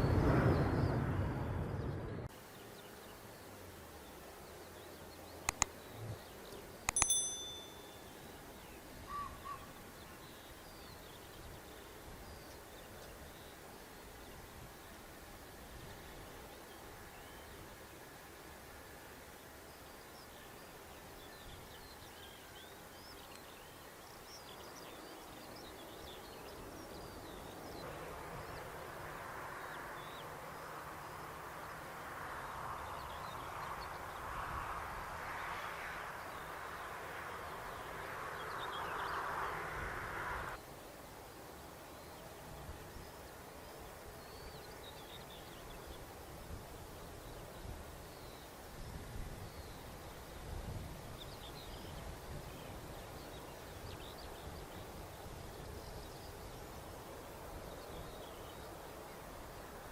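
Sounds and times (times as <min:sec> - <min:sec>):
small birds chirping: 0:02.4 - 0:14.6.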